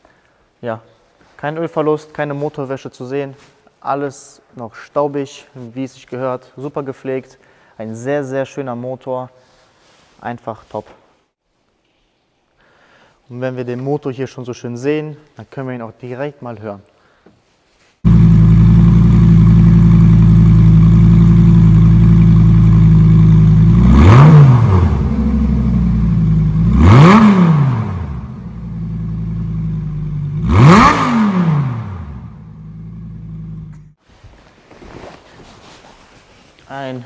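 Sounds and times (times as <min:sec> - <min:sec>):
sports car engine idling and revving: 0:18.1 - 0:34.0.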